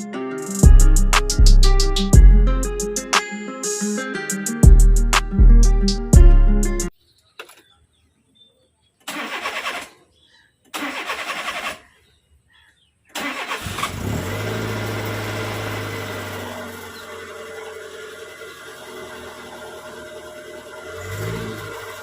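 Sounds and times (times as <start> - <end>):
car starter cranking: 9.0 - 10.0, 10.7 - 11.8, 13.1 - 22.0
car engine idling: 13.4 - 22.0.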